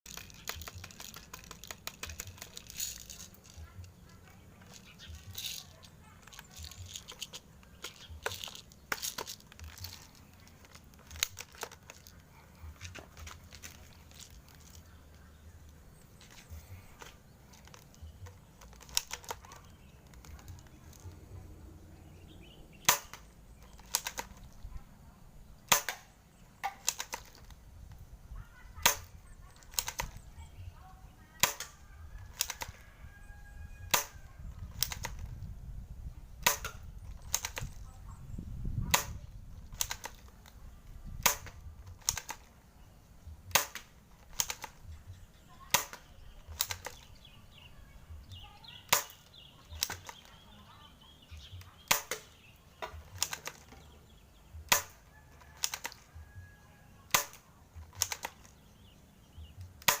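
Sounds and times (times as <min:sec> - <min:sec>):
replica rifle bolt clicks: 0:04.6 - 0:14.9, 0:15.7 - 0:21.2, 0:22.8 - 0:24.7, 0:25.7 - 0:28.0, 0:28.8 - 0:30.2, 0:31.4 - 0:32.8, 0:33.8 - 0:35.4, 0:36.4 - 0:37.8, 0:38.9 - 0:42.5, 0:43.5 - 0:44.9, 0:45.7 - 0:47.2, 0:48.9 - 0:50.3, 0:51.4 - 0:53.9, 0:54.6 - 0:58.7, 0:59.6 - 1:00.0.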